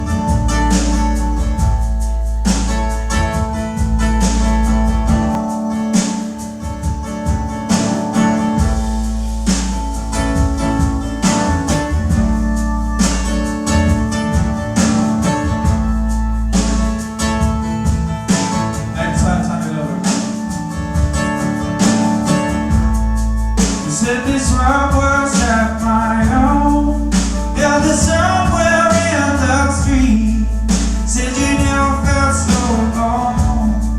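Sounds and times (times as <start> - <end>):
drum beat: 0.0 - 33.9
guitar: 0.0 - 33.9
person singing: 18.4 - 20.7, 23.8 - 33.9.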